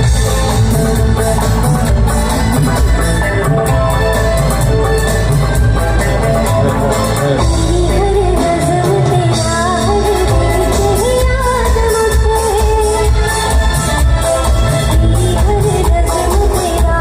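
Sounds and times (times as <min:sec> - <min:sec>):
amplified music with heavy bass: 0:00.0 - 0:11.5
person singing live: 0:00.0 - 0:17.0.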